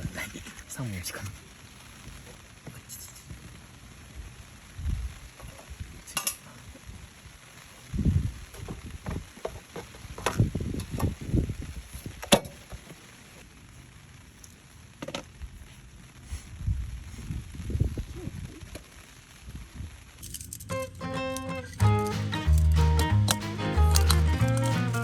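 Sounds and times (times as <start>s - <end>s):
match being struck: 20.7s - 25.0s.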